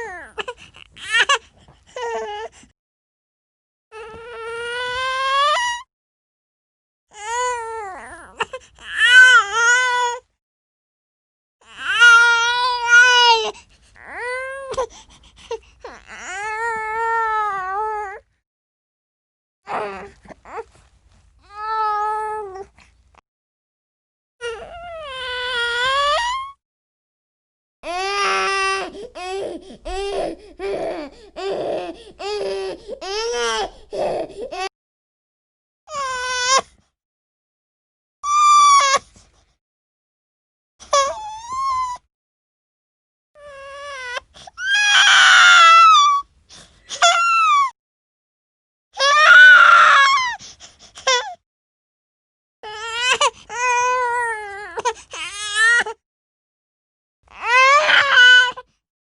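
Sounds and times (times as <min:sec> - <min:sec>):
infant crying: 0:11.6 - 0:14.8, 0:15.9 - 0:18.2, 0:24.4 - 0:26.6, 0:27.8 - 0:34.7, 0:35.9 - 0:36.7, 0:38.3 - 0:39.0, 0:43.4 - 0:46.3, 0:46.9 - 0:47.8, 0:49.0 - 0:50.4, 0:52.6 - 0:56.0, 0:57.3 - 0:58.6.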